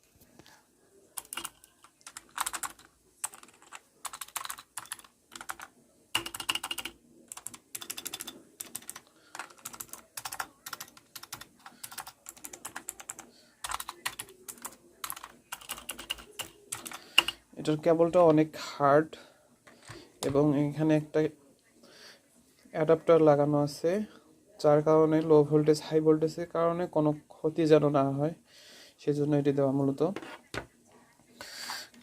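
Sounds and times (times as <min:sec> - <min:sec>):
keyboard keys clicking: 0:01.2 - 0:17.3.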